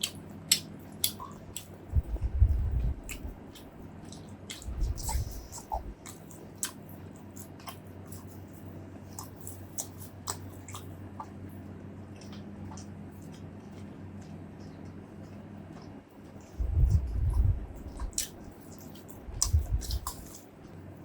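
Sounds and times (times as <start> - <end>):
person chewing food: 0.0 - 21.0
low hum: 1.4 - 6.2, 10.9 - 21.0.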